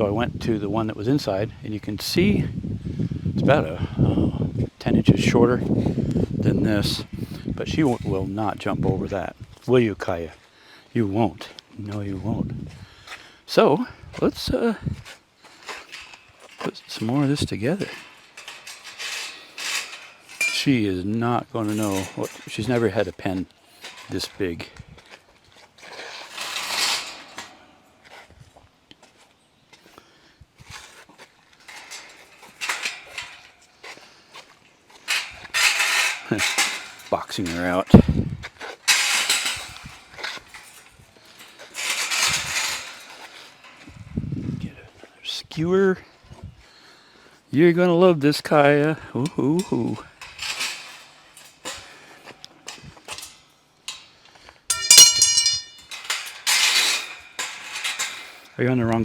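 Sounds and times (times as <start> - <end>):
scraping metal rattle: 15.5 - 24.5, 25.8 - 27.8, 31.6 - 33.7, 35.1 - 38.0, 38.6 - 44.2, 49.8 - 59.0
metal wire panels clinking: 15.6 - 24.6, 25.8 - 27.8, 31.6 - 33.8, 35.0 - 44.2, 49.2 - 59.0
ringing metal clang: 20.4 - 20.8, 54.7 - 56.4.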